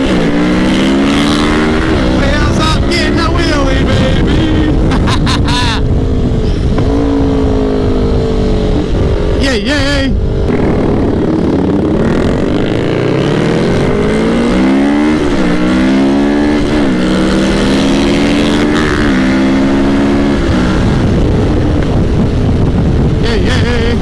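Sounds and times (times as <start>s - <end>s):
motorcycle engine accelerating: 0.0s - 24.0s
wind rush: 0.0s - 24.0s.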